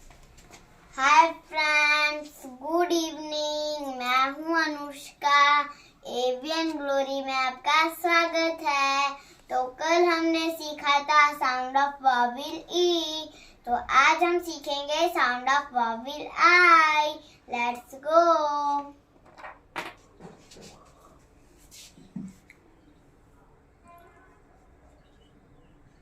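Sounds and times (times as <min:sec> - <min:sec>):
child singing alone: 0:01.0 - 0:19.0.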